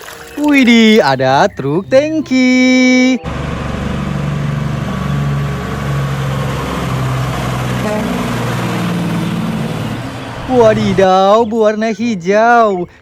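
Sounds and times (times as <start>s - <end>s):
motor humming: 3.2s - 11.0s.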